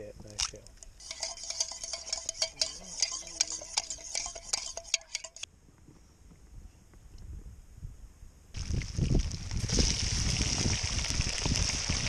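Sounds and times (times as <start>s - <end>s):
fork whisking egg in bowl: 0.8s - 5.5s.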